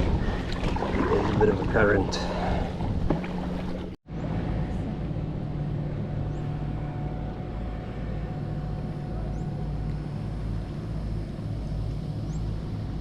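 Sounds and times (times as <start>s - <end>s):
motorboat engine droning: 0.0s - 13.0s
water: 0.0s - 13.0s
wind: 0.0s - 13.0s.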